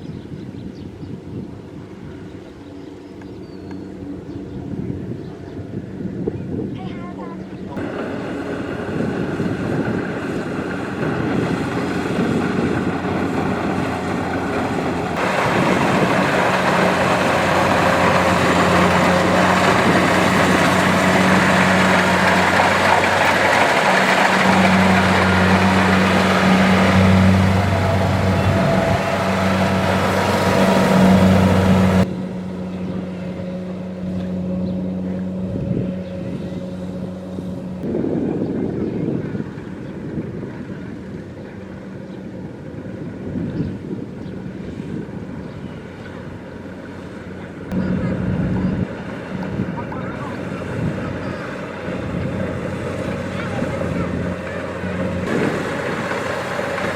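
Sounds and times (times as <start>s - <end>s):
combine harvester engine droning: 0.0s - 56.9s
machinery clatter: 7.8s - 35.4s, 47.3s - 56.9s.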